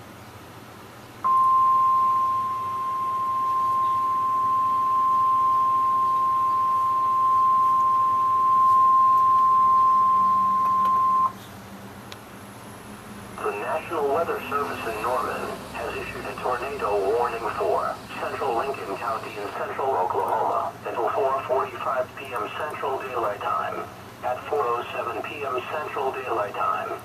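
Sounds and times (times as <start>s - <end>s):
high-pitched alarm tone: 1.3s - 11.4s, 13.4s - 19.6s
faint radio hiss: 11.4s - 27.0s.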